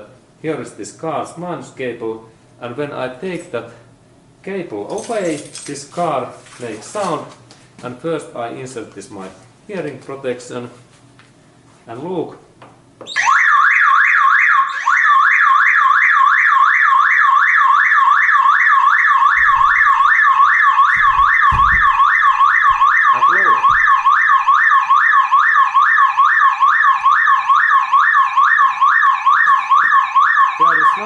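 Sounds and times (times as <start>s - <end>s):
car alarm siren warbling: 13.1s - 31.0s
low thumps: 19.3s - 20.1s, 20.8s - 23.0s, 23.6s - 24.1s.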